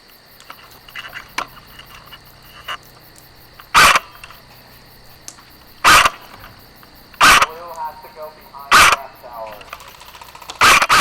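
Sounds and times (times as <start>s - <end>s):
night insects chirring: 0.0s - 11.0s
airsoft gun shots: 3.7s - 4.4s, 5.8s - 6.6s, 7.2s - 11.0s.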